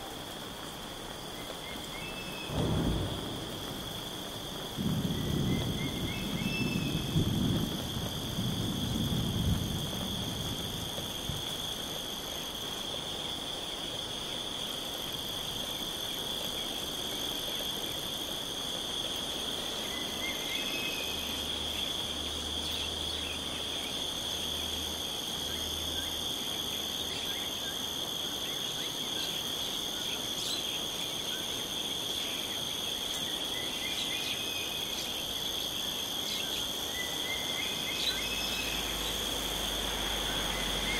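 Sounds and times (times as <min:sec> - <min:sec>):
crickets shrilling: 0:00.0 - 0:40.9
low rumble of thunder: 0:02.2 - 0:11.9, 0:38.0 - 0:40.9.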